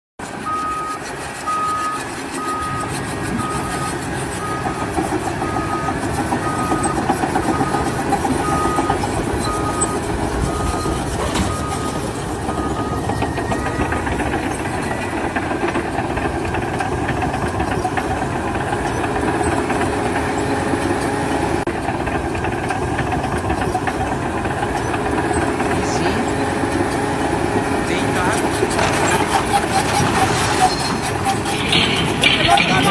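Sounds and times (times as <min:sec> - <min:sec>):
heavy vehicle engine running: 0:00.2 - 0:32.9
reversing alarm beeping: 0:00.4 - 0:16.3, 0:23.2 - 0:32.9.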